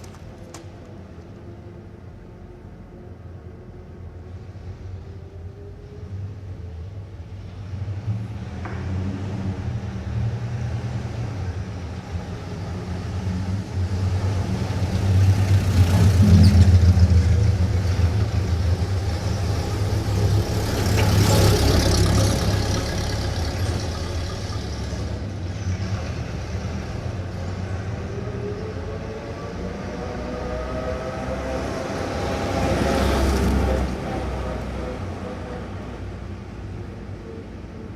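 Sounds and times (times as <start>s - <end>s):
traffic engine rumble: 0.0s - 37.9s
vehicles passing: 0.0s - 37.9s
vehicle accelerating: 7.3s - 37.6s.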